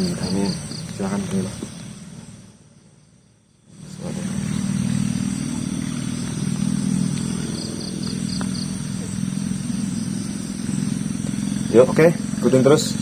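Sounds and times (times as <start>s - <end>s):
motor humming: 3.7s - 13.0s.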